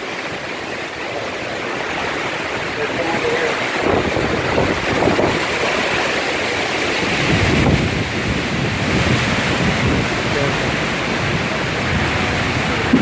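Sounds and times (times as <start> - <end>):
tornado winds rushing: 0.0 - 13.0
wind buffeting microphone: 0.0 - 13.0.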